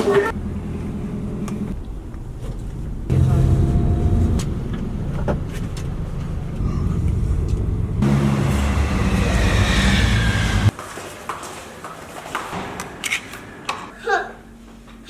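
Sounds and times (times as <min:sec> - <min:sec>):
vehicle engine droning: 0:00.0 - 0:10.7
high falling whine: 0:06.9 - 0:10.7.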